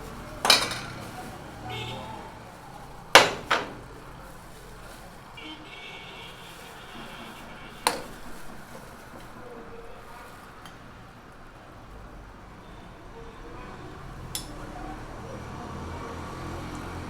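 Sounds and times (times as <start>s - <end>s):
bowls and utensils knocking: 0.4s - 1.2s, 3.2s - 3.9s.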